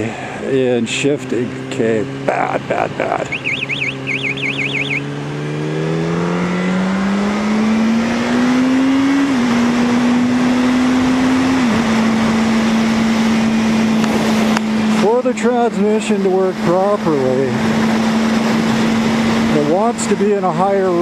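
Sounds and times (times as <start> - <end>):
motorcycle engine revving: 0.0 - 21.0
warbling electronic tone: 3.2 - 5.1
wind rush: 10.2 - 14.9.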